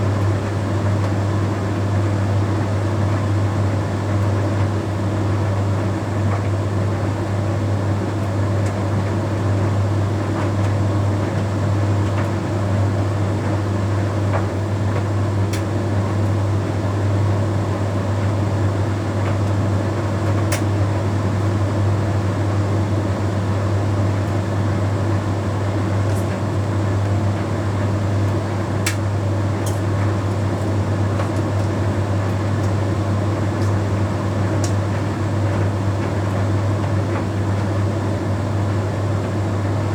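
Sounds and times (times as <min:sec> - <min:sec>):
tumble dryer humming: 0:22.6 - 0:39.9.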